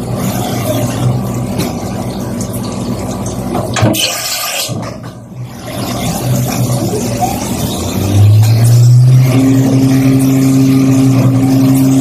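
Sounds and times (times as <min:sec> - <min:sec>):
milling machine spindle hum: 0:05.3 - 0:12.0
higher machine tone: 0:06.6 - 0:12.0.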